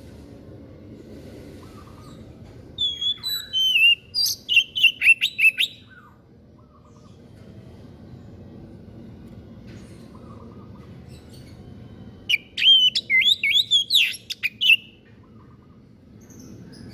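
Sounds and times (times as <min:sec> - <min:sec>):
songbird singing: 0:01.7 - 0:07.2, 0:10.1 - 0:16.9.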